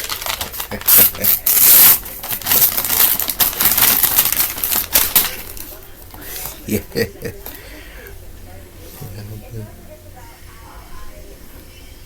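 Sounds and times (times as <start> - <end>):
wrapping paper tearing and crumpling: 0.0 - 5.8.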